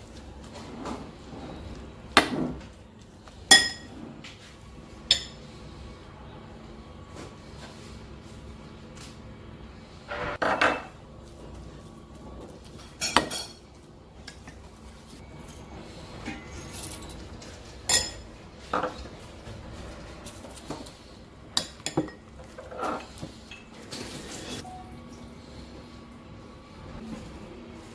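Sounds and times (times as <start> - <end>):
utensils clinking against dishes: 3.5 - 4.0, 5.1 - 5.5, 12.6 - 14.7, 15.4 - 19.1, 20.2 - 24.9.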